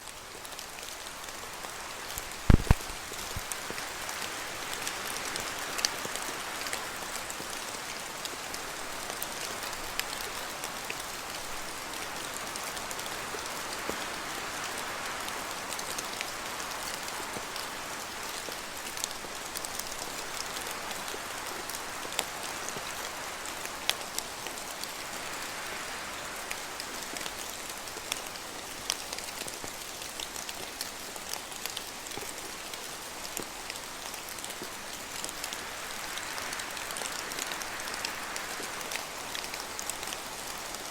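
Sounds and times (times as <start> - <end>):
steady rain in forest: 0.0 - 40.9
wind through branches: 0.0 - 40.9
heavy low thuds: 2.5 - 2.9.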